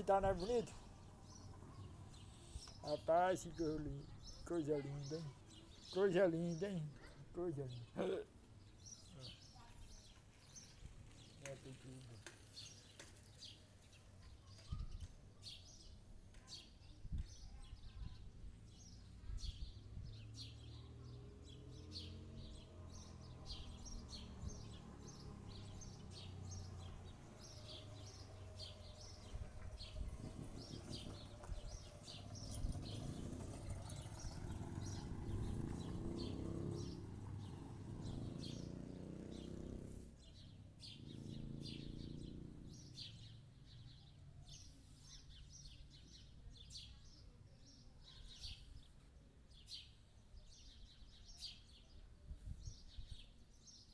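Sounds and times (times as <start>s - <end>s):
birds chirping: 0.0s - 53.9s.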